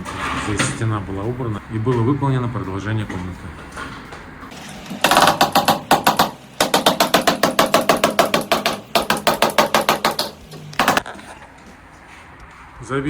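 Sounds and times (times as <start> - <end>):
rapid hollow hammer knocking: 4.5 - 11.0.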